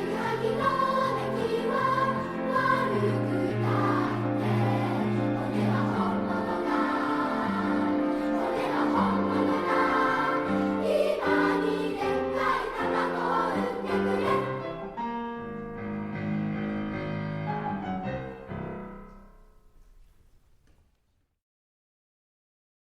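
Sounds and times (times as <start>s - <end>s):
children's choir singing: 0.0s - 15.2s.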